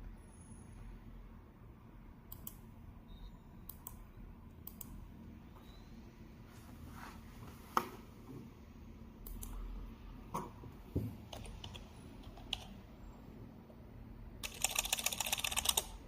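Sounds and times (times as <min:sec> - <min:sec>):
low steady hum: 0:00.0 - 0:16.0
computer mouse clicking: 0:02.3 - 0:02.6, 0:03.7 - 0:04.0, 0:04.6 - 0:05.0, 0:09.2 - 0:09.6, 0:14.4 - 0:15.9.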